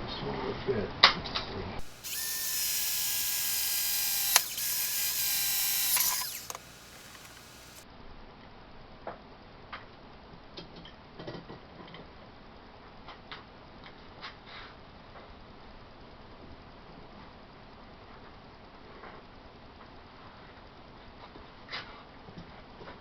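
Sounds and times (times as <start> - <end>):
electric drill drilling: 1.8 - 7.8.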